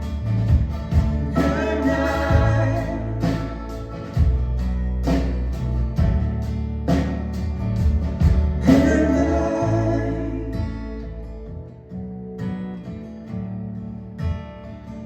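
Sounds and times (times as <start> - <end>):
strummed acoustic guitar: 0.0 - 15.0
person singing: 1.3 - 3.8, 8.7 - 11.0.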